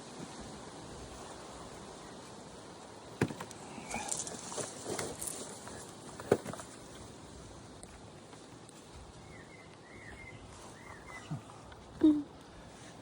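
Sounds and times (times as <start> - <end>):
bird chirping: 9.2 - 11.4.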